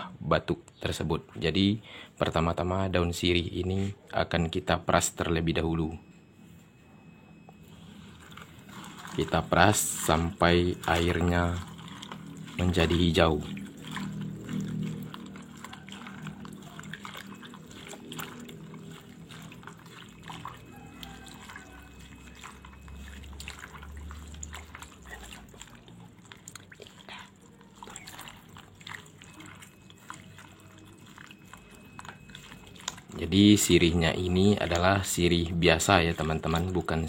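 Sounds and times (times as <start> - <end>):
hands squeezing wet leaves: 7.0 - 37.0
water splashing and dripping: 7.8 - 37.0.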